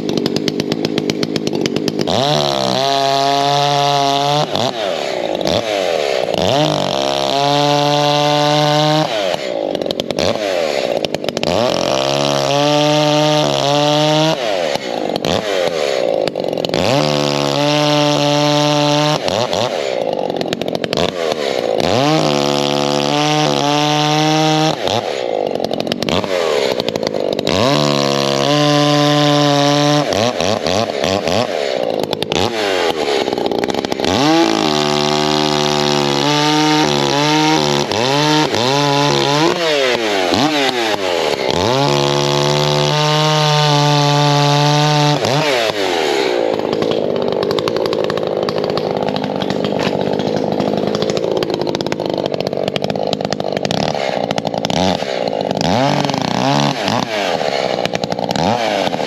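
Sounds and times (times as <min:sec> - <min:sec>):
chainsaw cutting wood: 0:00.0 - 0:59.0.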